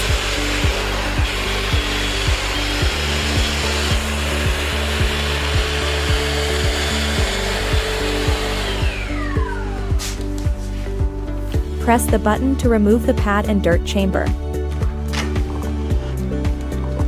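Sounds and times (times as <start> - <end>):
vacuum mop motor running: 0.0 - 10.7
music with thumping beat: 0.0 - 17.0.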